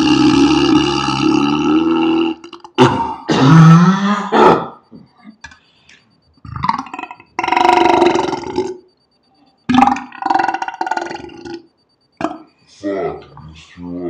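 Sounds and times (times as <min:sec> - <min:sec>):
loud deep human burps: 0:00.0 - 0:04.8, 0:06.4 - 0:08.8, 0:09.7 - 0:12.5.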